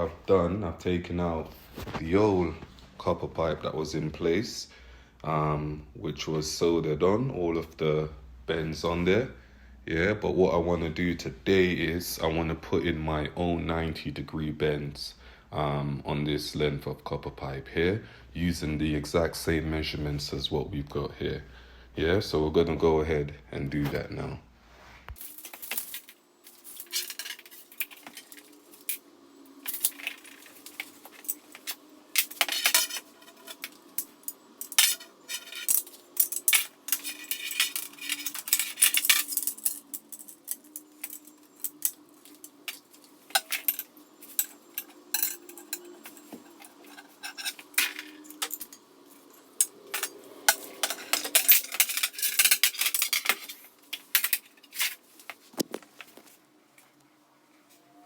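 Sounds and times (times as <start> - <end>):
faint steady hum: 0.0 - 58.0
copper pipe clinking: 25.2 - 55.0.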